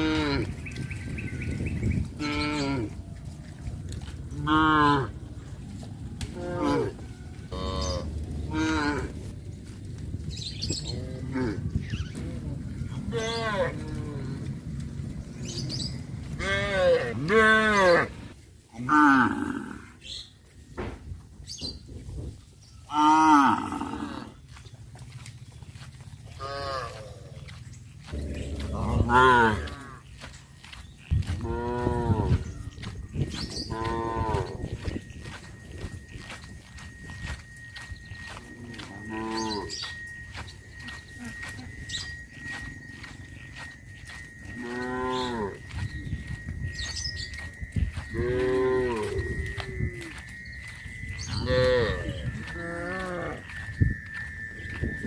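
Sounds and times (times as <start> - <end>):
cow mooing: 0.0 - 0.6, 2.2 - 3.0, 4.3 - 5.2, 6.2 - 9.2, 10.8 - 11.7, 13.0 - 14.5, 16.4 - 18.2, 18.8 - 20.0, 22.9 - 24.4, 26.4 - 27.5, 28.1 - 30.0, 31.4 - 32.4, 33.7 - 34.6, 38.7 - 39.9, 44.6 - 45.6, 48.1 - 50.0, 51.3 - 53.5.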